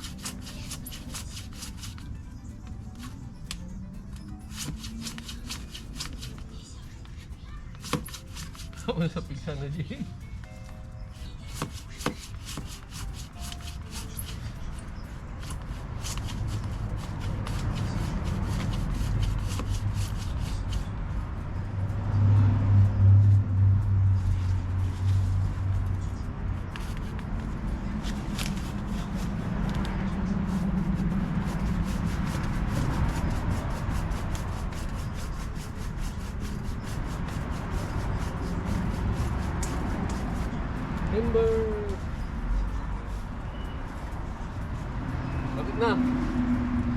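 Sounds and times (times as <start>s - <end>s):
hand saw cutting branch: 0.0s - 2.0s, 4.5s - 6.5s, 7.8s - 8.9s, 11.4s - 14.5s, 15.4s - 20.9s, 28.0s - 29.6s, 30.3s - 40.6s.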